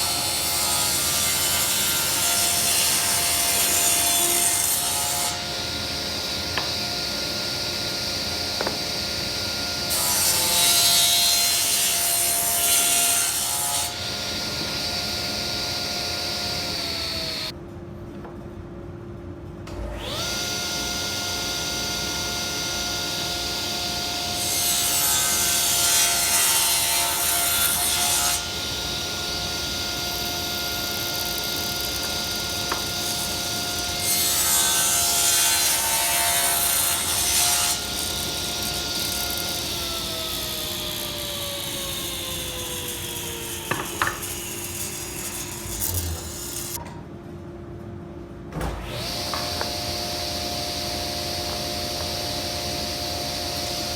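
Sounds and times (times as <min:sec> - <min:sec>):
table saw whining: 0:00.0 - 0:17.5, 0:19.7 - 0:46.8, 0:48.7 - 0:53.9
saw ripping wood: 0:31.1 - 0:46.8
saw blade coasting down: 0:35.0 - 0:46.8.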